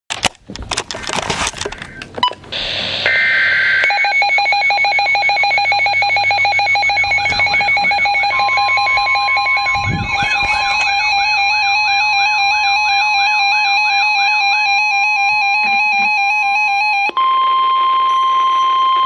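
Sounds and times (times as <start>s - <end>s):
crackling static and clicks: 0.1s - 5.6s, 6.5s - 17.1s
weather radio warning tone: 1.6s - 18.0s
digital header data burst: 2.5s - 17.2s
warbling siren-like tone: 2.6s - 17.7s
rapid pulsing beep: 3.1s - 19.0s.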